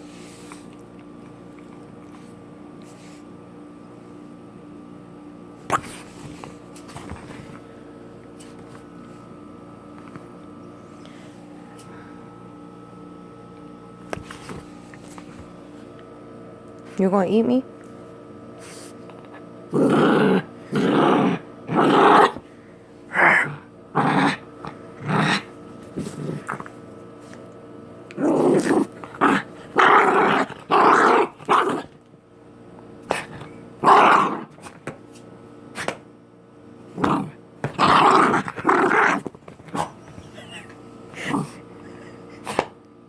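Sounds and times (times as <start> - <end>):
dog play-growling: 18.7 - 22.4, 23.1 - 32.1, 33.0 - 34.8, 36.9 - 42.7.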